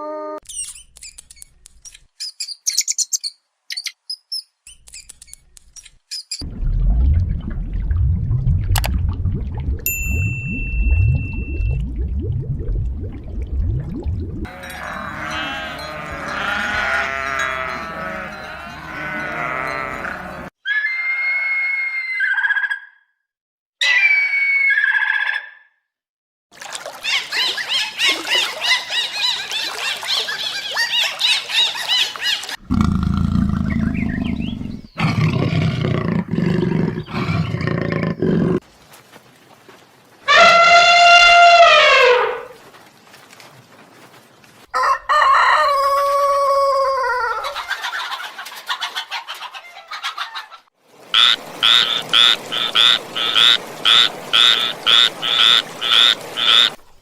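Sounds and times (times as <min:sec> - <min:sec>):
low animal rumbling: 0:32.6 - 0:38.6
dense bird chirping: 0:33.1 - 0:35.2
frog croaks: 0:51.2 - 0:56.8.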